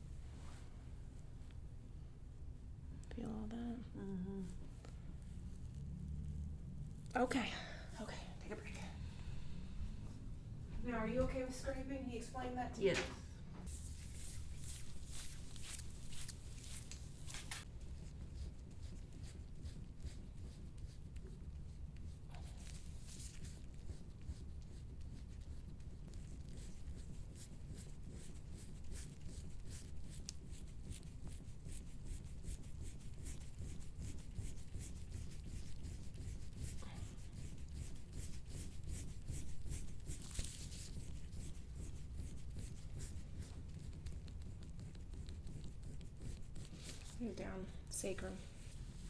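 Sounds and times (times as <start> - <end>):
low steady hum: 0.0 - 49.0
scraping tool on skin: 13.7 - 17.7.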